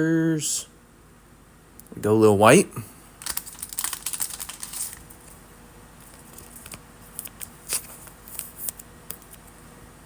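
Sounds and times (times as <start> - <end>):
trading cards clicking and rustling: 3.2 - 5.4.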